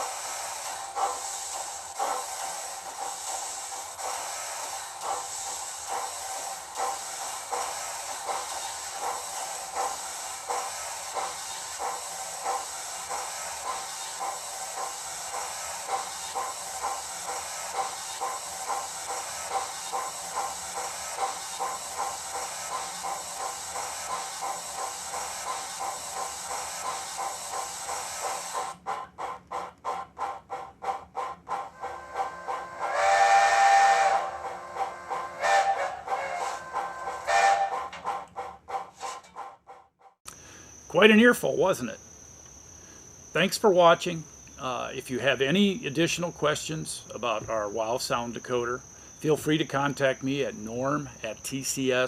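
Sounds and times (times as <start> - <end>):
cylinder cock hiss: 0.0 - 30.0, 30.6 - 39.3, 40.3 - 52.0
steam locomotive exhaust chuffs: 0.0 - 52.0
steam whistle: 31.8 - 37.9.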